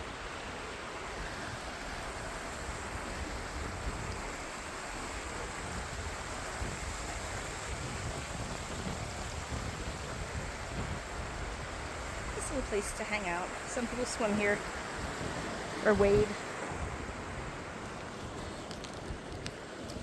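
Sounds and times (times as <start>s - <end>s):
water flowing over rocks: 0.0s - 20.0s.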